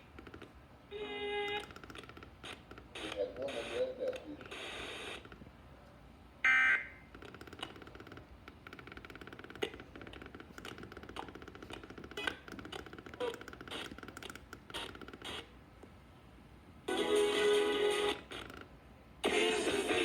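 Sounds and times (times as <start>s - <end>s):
radio static crackling: 2.4s - 5.4s, 14.7s - 15.5s.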